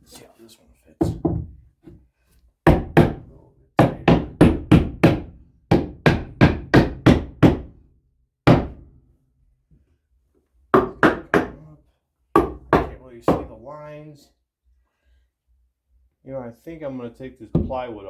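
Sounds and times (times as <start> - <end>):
sharp wooden knocks: 1.0 - 1.6, 2.7 - 3.2, 3.8 - 7.7, 8.5 - 8.9, 10.8 - 11.6, 12.4 - 13.5, 17.6 - 17.9.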